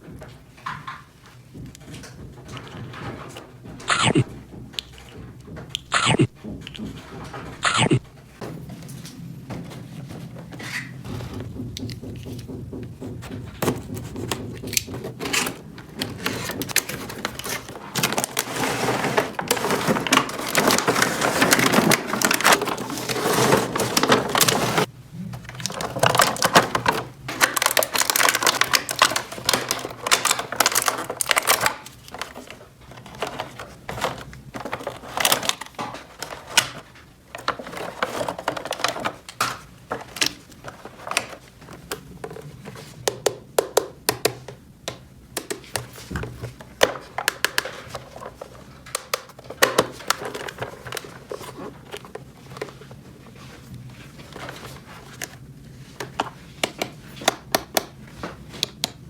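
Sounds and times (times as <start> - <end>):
plastic toy pieces clattering: 15.2 - 24.9, 25.5 - 41.8.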